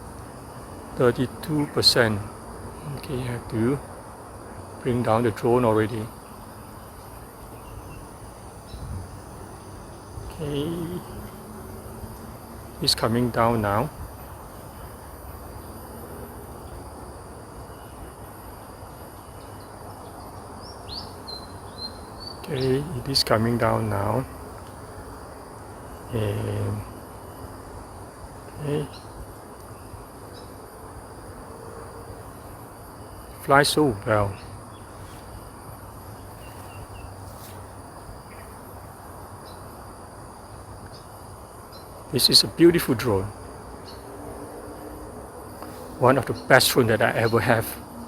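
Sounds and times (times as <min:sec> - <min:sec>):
high insect buzz: 0:00.0 - 0:48.0
faint bird chirps: 0:04.8 - 0:11.4, 0:17.6 - 0:18.2, 0:19.2 - 0:24.2, 0:28.5 - 0:30.6, 0:32.3 - 0:38.6
wind rumbling on microphone: 0:07.4 - 0:10.4
wind buffeting microphone: 0:08.0 - 0:09.4
bird chirps: 0:20.6 - 0:23.7.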